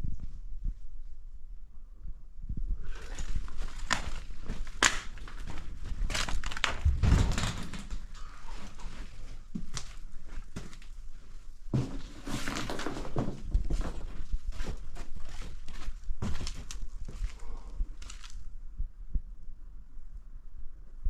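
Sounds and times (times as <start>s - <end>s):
footsteps: 2.8s - 18.4s
knocks and thuds: 6.6s - 8.0s.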